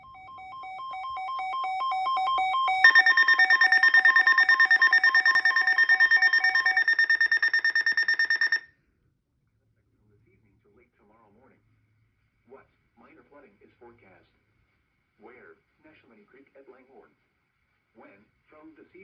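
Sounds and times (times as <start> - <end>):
pulsing two-note alert beep: 0.0 - 8.6.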